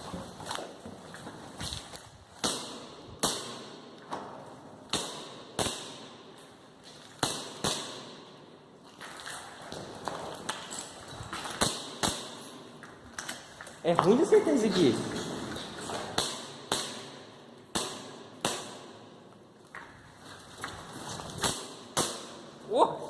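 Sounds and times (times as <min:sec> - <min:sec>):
air gun firing shots: 0:02.4 - 0:03.8, 0:04.9 - 0:06.2, 0:07.2 - 0:08.2, 0:11.6 - 0:12.4, 0:16.0 - 0:19.1, 0:21.4 - 0:22.5.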